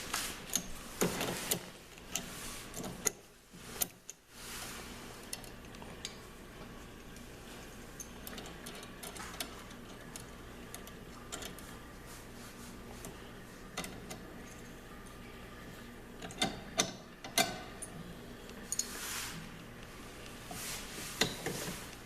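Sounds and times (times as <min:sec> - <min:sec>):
clicks and knocks of hand tools: 0:16.2 - 0:17.9.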